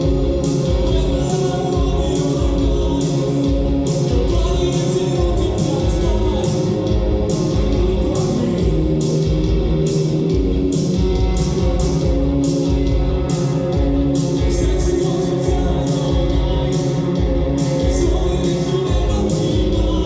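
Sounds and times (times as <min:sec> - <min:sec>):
person singing: 0:00.0 - 0:09.3, 0:14.5 - 0:20.0
live rock band playing: 0:00.0 - 0:20.0
pounding drum beat: 0:00.0 - 0:20.0.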